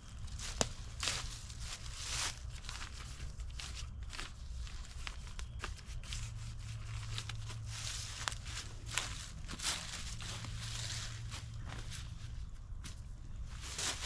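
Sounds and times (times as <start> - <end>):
rustling in dry leaves: 0.0 - 14.0.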